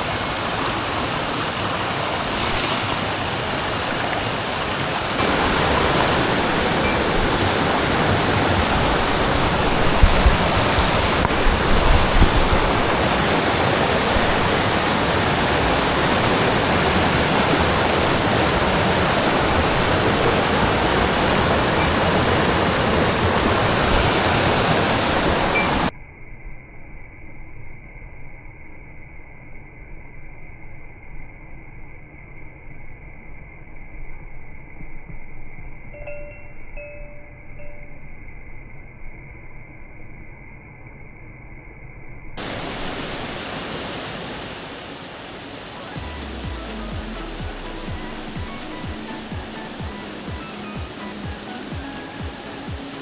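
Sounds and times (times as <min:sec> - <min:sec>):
rushing stream and waterfall: 0:00.0 - 0:25.9, 0:42.4 - 0:53.0.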